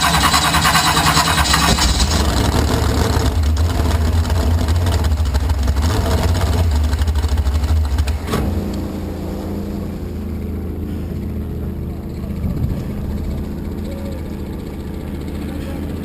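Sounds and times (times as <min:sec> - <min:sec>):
boat engine running at low speed: 0:00.0 - 0:16.0.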